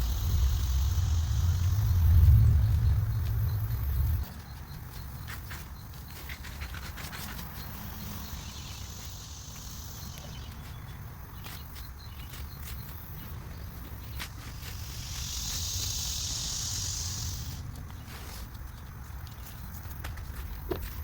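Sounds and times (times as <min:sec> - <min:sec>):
low steady rumble: 0:00.0 - 0:05.1.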